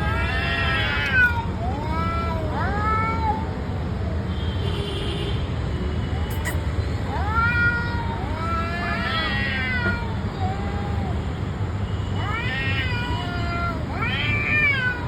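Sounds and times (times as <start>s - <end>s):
cats yowling: 0.0s - 3.6s, 7.1s - 11.4s, 12.2s - 15.0s.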